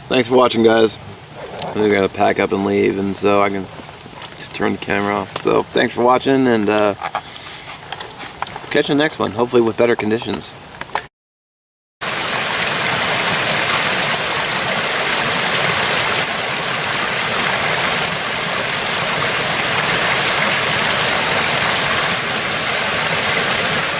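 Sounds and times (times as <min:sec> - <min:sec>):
water rushing: 0:00.0 - 0:07.1, 0:12.0 - 0:23.9.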